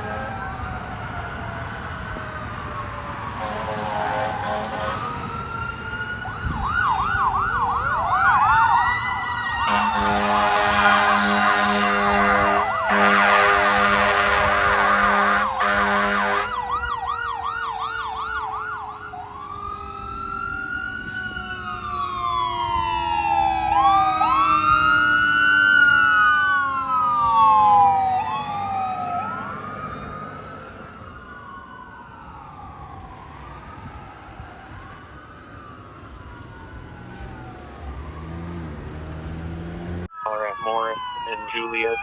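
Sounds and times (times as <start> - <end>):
siren yelp and wail: 0.0 - 42.0
fire engine air horn blasting: 3.3 - 5.4, 9.6 - 16.7
low siren tone sliding down: 16.5 - 42.0.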